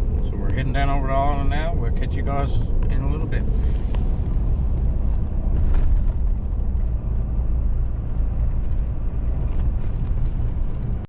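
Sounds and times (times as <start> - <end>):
truck engine and road noise: 0.0 - 11.0.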